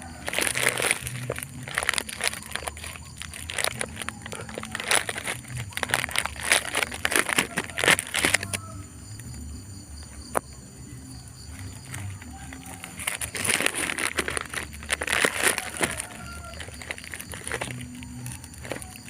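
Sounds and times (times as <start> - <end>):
stalks and leaves rustling: 0.0 - 19.0.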